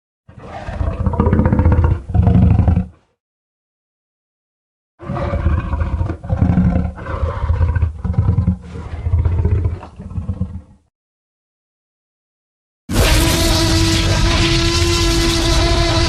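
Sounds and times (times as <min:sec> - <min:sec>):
dinosaur roar: 0:00.3 - 0:03.0, 0:05.0 - 0:10.8, 0:12.9 - 0:16.0.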